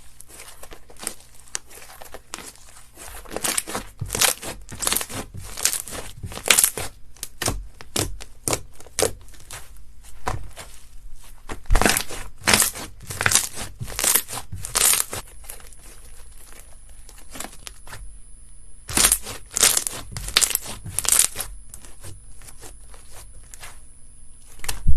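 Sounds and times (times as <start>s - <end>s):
slime squishing and popping: 3.2s - 10.6s, 11.5s - 18.0s, 18.9s - 23.8s.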